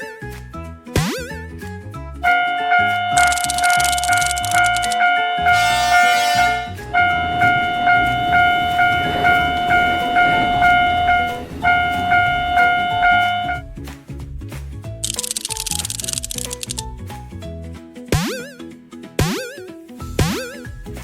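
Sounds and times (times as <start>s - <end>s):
train passing rush: 5.4s - 13.4s
railroad crossing bell ringing: 6.9s - 13.2s.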